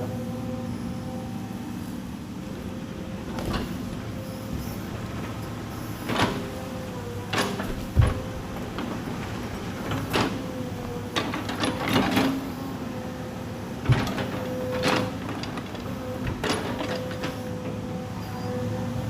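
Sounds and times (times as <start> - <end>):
excavator engine running: 0.0 - 19.0
knocks and clunks of logs: 7.3 - 12.4.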